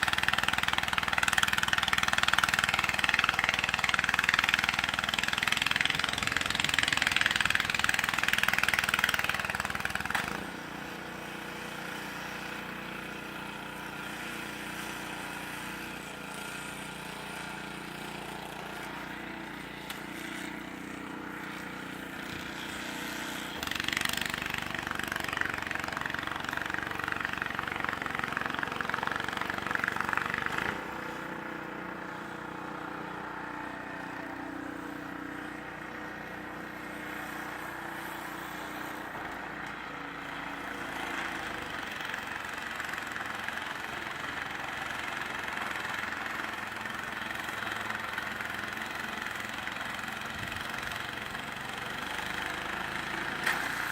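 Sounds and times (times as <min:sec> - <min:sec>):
engine running: 0:00.0 - 0:53.9.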